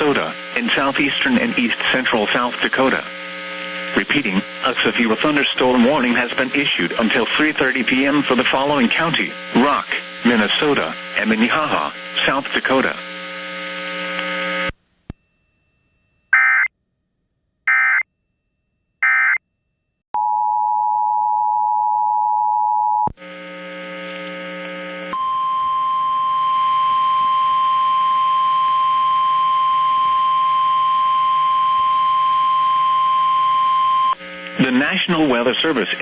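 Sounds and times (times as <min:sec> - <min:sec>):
radio hum: 0:00.0 - 0:14.8, 0:33.4 - 0:36.0.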